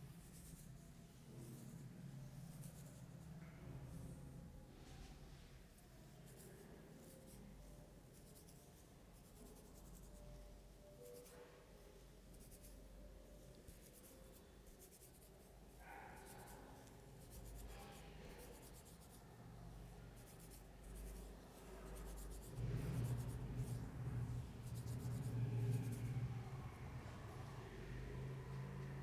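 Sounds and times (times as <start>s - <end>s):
low hum: 22.5s - 29.0s.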